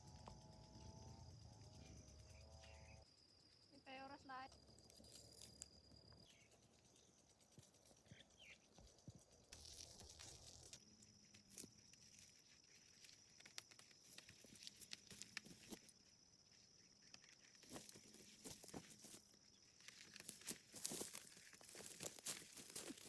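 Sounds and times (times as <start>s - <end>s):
faint ticks and rustles: 0.0s - 23.0s.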